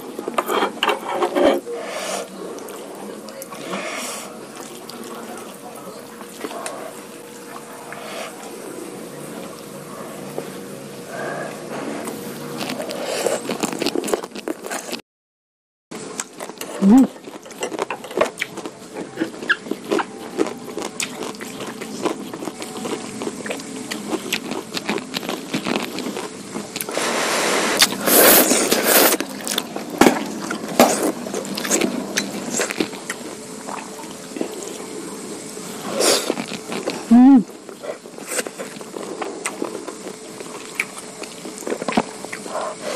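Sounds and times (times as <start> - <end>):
noodle slurp: 26.9 - 29.2.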